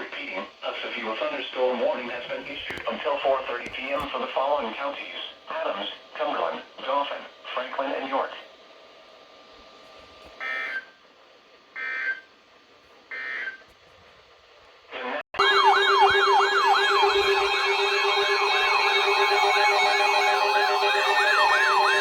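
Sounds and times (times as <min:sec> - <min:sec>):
digital data tone bursts: 0:15.4 - 0:22.0
wailing electronic siren: 0:15.4 - 0:22.0.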